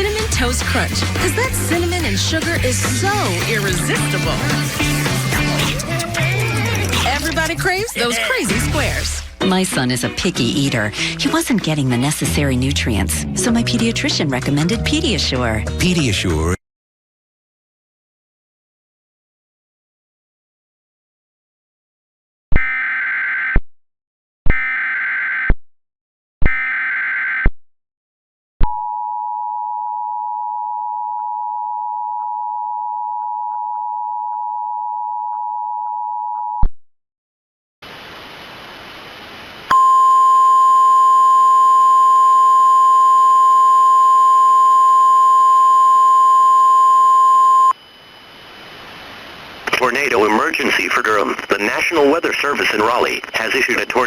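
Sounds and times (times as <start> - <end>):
two-tone attention signal: 39.7 - 48.2
harsh steady single tone: 39.7 - 49.2.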